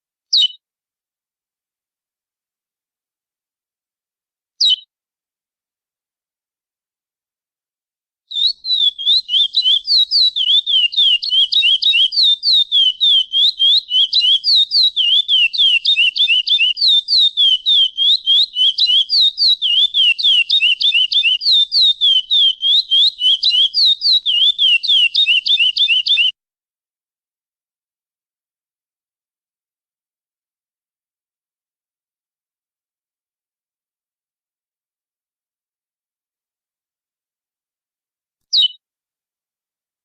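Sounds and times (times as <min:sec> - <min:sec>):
finch singing rapid sharp notes: 0:08.3 - 0:26.3.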